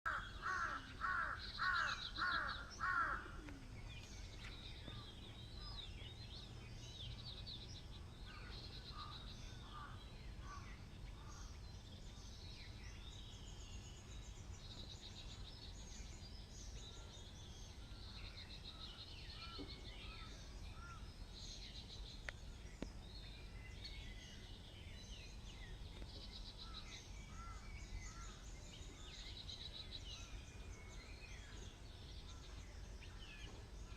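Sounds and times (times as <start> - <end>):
loud repeated bird calls: 0.1 - 3.7
birds chirping and trilling: 0.1 - 33.9.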